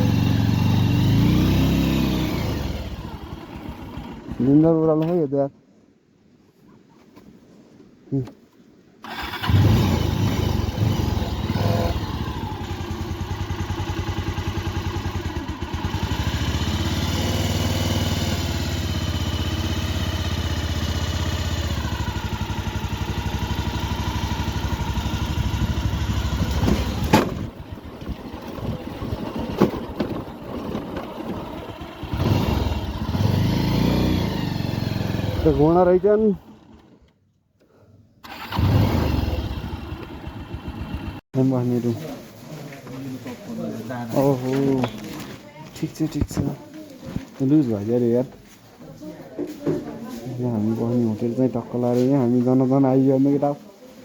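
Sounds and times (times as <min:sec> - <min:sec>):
motorcycle engine running: 0:00.0 - 0:04.4, 0:09.1 - 0:37.0, 0:38.3 - 0:41.2.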